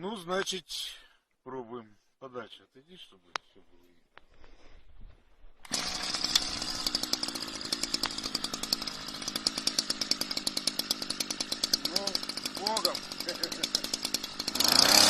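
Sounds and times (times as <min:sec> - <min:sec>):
small two-stroke engine buzzing: 0:05.6 - 0:15.0.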